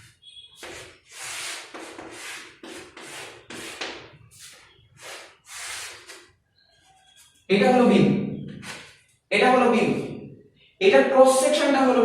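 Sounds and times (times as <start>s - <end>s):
pen scratching on paper: 0.6s - 6.2s.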